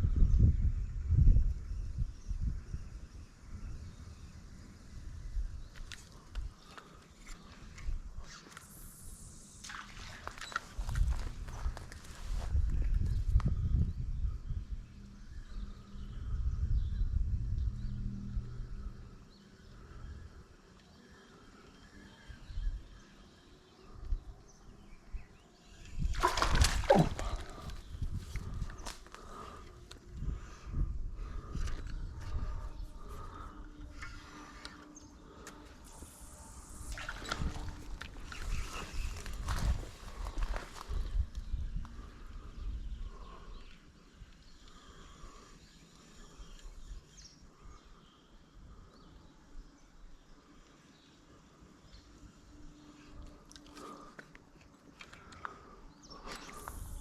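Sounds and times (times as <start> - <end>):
distant birds chirping: 1.6 - 57.0
splash in water: 26.1 - 27.6.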